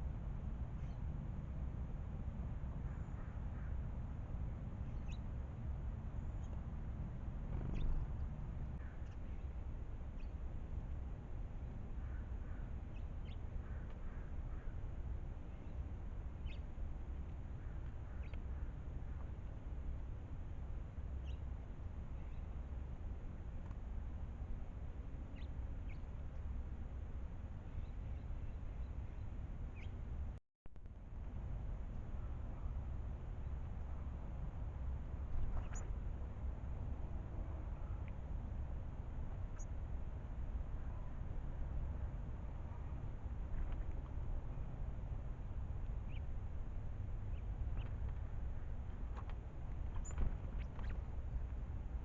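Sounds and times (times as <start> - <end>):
low outdoor rumble: 0.0 - 52.0
thin bird chirps: 4.8 - 5.2, 25.3 - 26.0, 35.4 - 36.0, 49.8 - 51.1
low rumble: 5.8 - 10.2.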